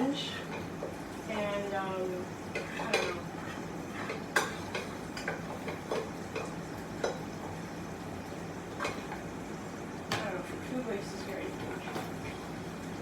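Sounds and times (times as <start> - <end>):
food frying in a pan: 0.0 - 13.0
utensil tapping frying pan: 2.5 - 7.6.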